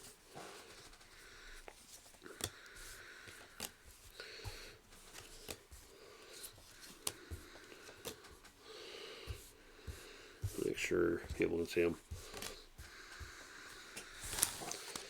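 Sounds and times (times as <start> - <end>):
cards sliding and tapping on table: 1.7 - 8.6, 12.2 - 15.0.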